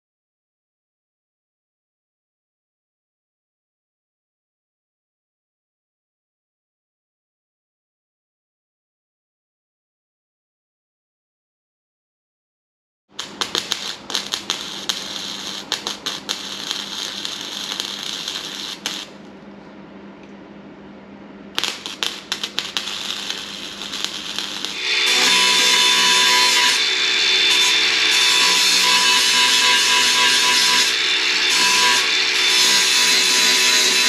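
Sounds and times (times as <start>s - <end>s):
welder crackling: 13.1s - 19.4s, 21.6s - 34.0s
angle grinder whining: 13.2s - 19.2s, 21.6s - 34.0s.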